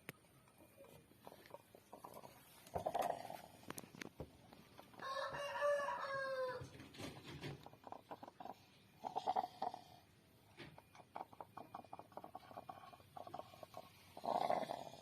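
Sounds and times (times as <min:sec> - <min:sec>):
rooster crowing: 0:05.0 - 0:06.7.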